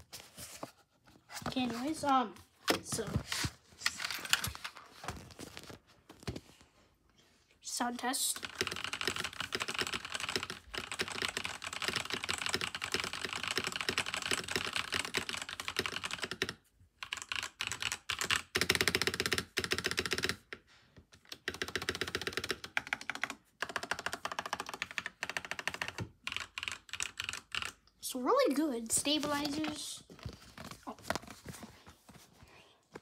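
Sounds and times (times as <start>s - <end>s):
typing on mechanical keyboard: 8.3s - 27.8s.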